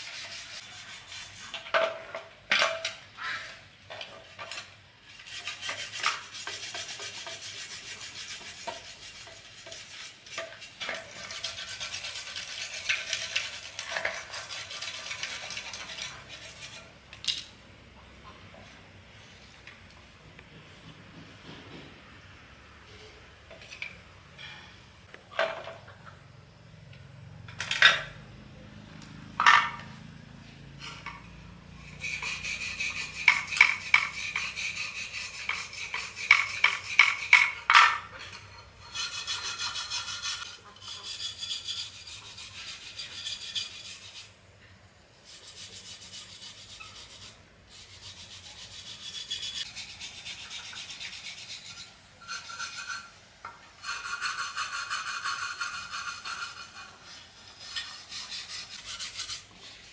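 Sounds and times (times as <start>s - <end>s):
hand sanding or scrubbing strokes: 0.0s - 1.9s, 5.1s - 17.0s, 31.7s - 44.4s, 45.2s - 59.9s.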